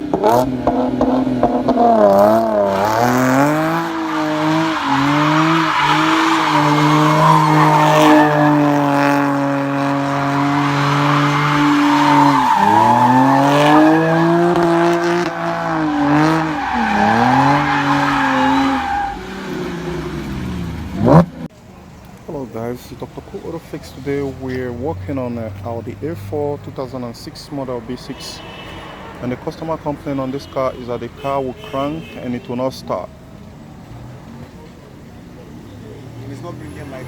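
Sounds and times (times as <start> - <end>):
car engine revving: 0.0 - 21.5
tyre squeal: 2.7 - 20.0, 27.9 - 32.4.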